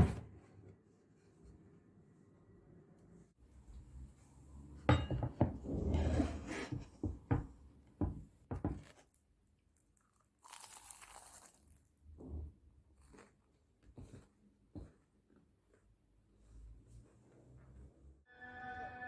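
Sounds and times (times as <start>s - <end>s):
tableware knocking and clinking: 4.9s - 6.5s.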